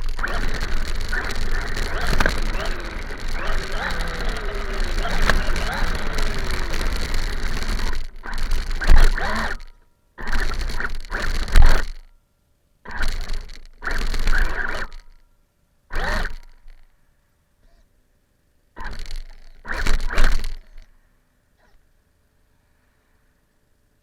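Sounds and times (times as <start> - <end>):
rc car noisy bursts: 0.0 - 9.6.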